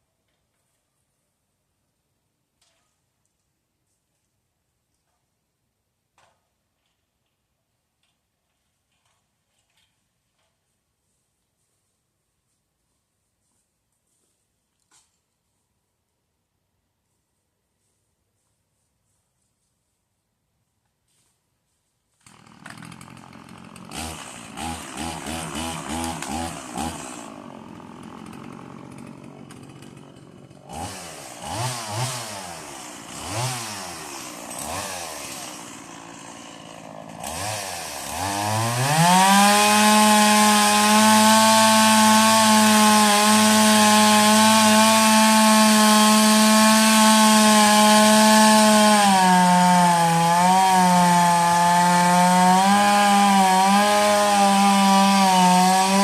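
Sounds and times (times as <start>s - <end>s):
chainsaw revving: 22.2s - 56.0s.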